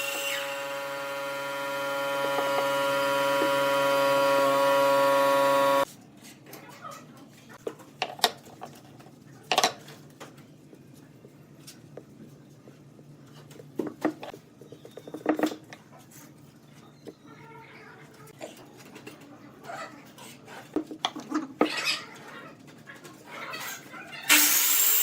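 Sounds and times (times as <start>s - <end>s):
wood lathe whining: 0.0s - 5.8s.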